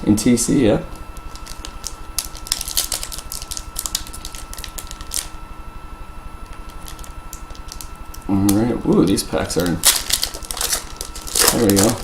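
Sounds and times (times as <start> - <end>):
wrapper crinkling and tearing: 1.2 - 5.3, 6.7 - 12.0.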